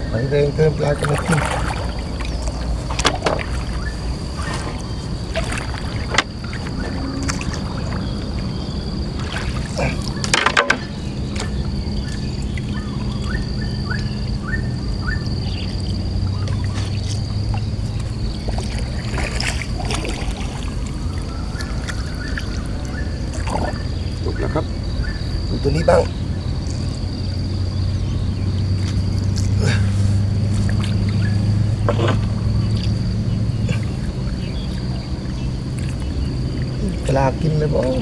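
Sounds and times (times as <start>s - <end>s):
river water sloshing around boat: 0.0s - 38.0s
low hum: 0.9s - 25.5s, 26.1s - 38.0s
sharp knocks: 10.2s - 11.0s.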